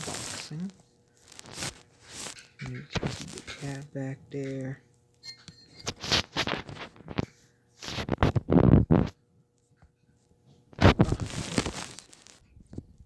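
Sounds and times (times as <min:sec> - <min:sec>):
rustling handling noise: 0:00.0 - 0:03.9, 0:05.8 - 0:09.1, 0:10.8 - 0:13.0.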